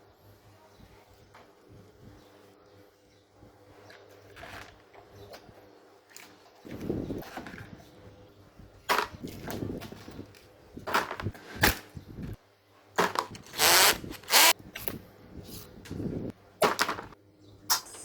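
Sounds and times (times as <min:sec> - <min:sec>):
power tool bursts: 0:13.4 - 0:14.6.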